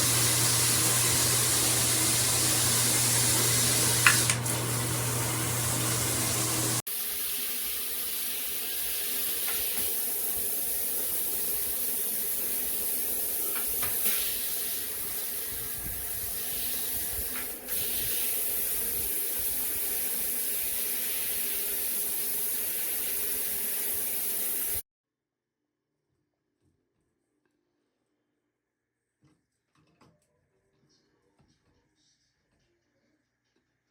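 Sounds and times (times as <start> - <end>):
water spraying from shower head: 0.0 - 24.8.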